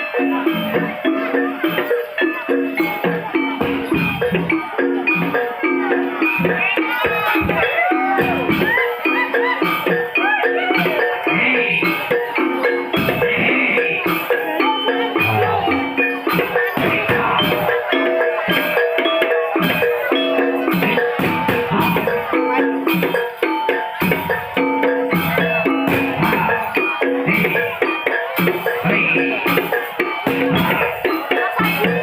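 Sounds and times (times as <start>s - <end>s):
drums: 0.0s - 32.0s
gamelan metal keys and gongs: 0.0s - 32.0s.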